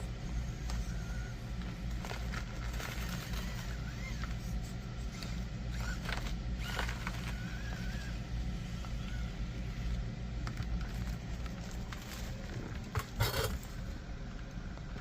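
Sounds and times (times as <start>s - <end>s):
rc car motor whine: 0.0s - 11.2s, 11.8s - 13.7s
steady low hum: 0.0s - 15.0s.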